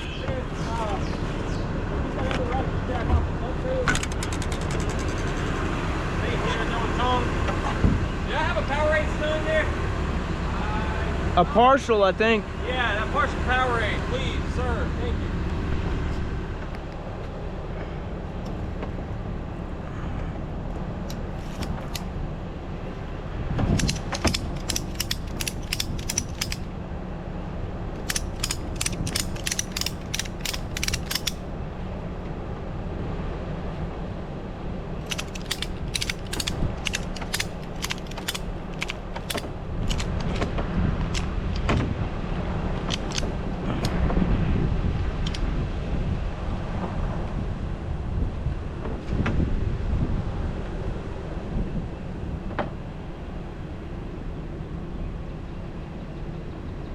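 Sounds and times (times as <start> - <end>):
steady low hum: 0.0 - 56.9
ratchet strap pawl clicking: 3.9 - 5.5, 21.1 - 22.1, 23.7 - 26.7, 28.0 - 31.4, 35.0 - 40.4, 42.8 - 44.0.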